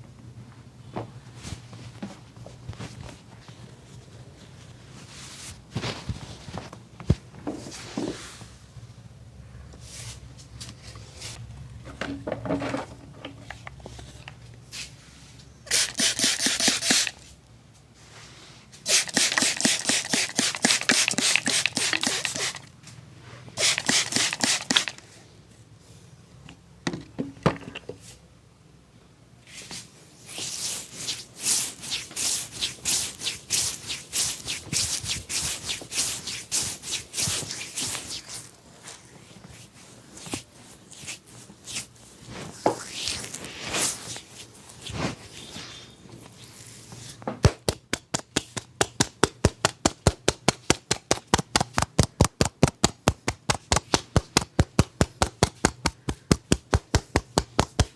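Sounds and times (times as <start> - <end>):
hands rubbing hair: 15.7 - 17.3, 18.8 - 22.7, 23.6 - 25.1, 29.5 - 57.9.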